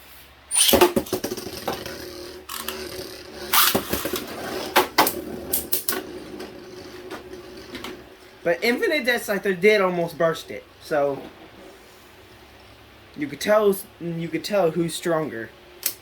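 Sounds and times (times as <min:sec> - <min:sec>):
spinning tops whirring: 0:00.5 - 0:08.2
sharp plastic clacks: 0:15.8 - 0:16.0.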